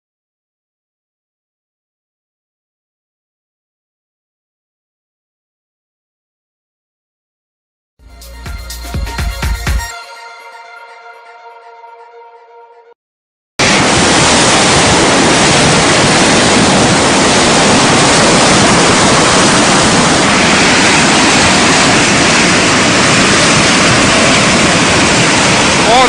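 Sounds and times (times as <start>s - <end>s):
quiet electronic music: 8.0s - 13.0s
rushing floodwater roar: 13.6s - 26.0s.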